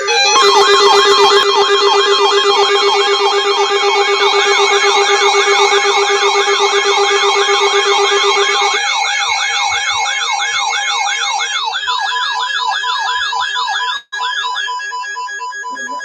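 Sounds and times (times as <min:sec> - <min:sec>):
beeping alert tones: 0:00.0 - 0:11.1
wailing electronic siren: 0:00.0 - 0:16.0.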